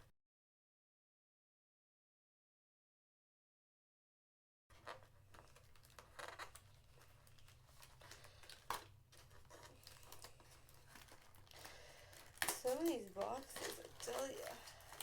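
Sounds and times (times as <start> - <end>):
cardboard and wrapping tearing: 4.8 - 15.0.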